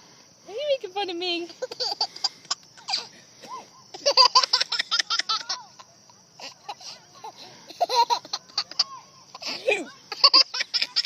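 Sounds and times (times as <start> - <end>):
baby laughing: 1.6 - 3.1, 3.9 - 6.9, 7.7 - 11.0.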